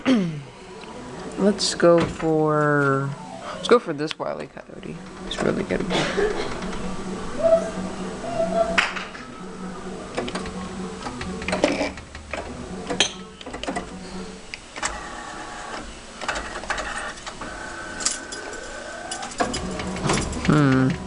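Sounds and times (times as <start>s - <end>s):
steady electrical hum: 0.0s - 21.0s
claw machine motors whirring: 4.8s - 21.0s.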